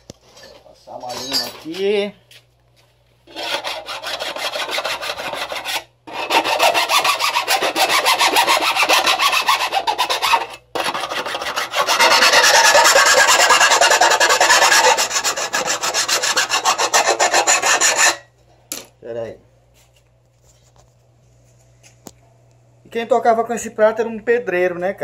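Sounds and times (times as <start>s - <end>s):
hand file rasping on metal: 3.3s - 18.3s.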